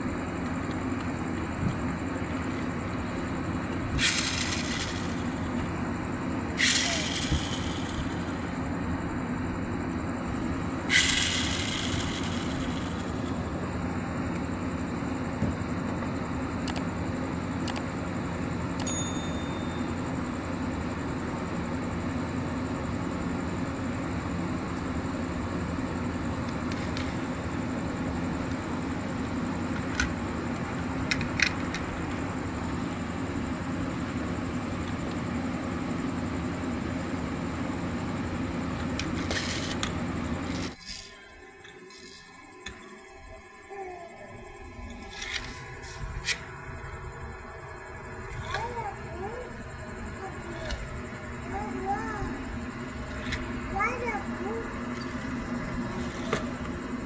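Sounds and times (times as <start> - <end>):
steady low hum: 0.0 - 57.0
toy spring motor whirring: 3.6 - 5.8, 6.5 - 8.6, 10.4 - 13.5, 39.0 - 42.4, 44.9 - 46.5, 48.3 - 49.5.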